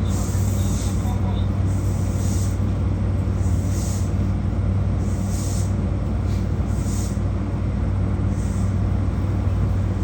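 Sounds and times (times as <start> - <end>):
electric train equipment humming: 0.0 - 10.0
soft hissing puffs: 1.7 - 2.7, 3.3 - 4.2, 5.0 - 7.2.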